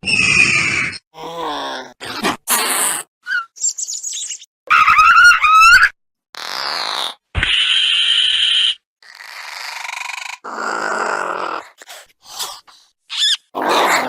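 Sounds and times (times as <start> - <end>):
shrill creature screech: 0.0 - 1.0, 4.7 - 11.5.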